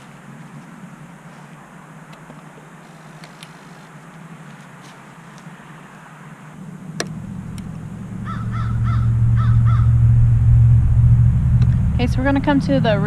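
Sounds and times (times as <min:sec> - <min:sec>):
low engine rumble: 0:00.0 - 0:13.0
crow cawing: 0:08.2 - 0:09.9.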